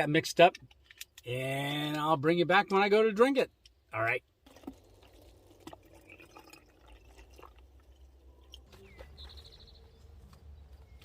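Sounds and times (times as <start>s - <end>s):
plastic clicks and handling: 0.4s - 2.0s
liquid pouring and dripping: 4.4s - 9.0s.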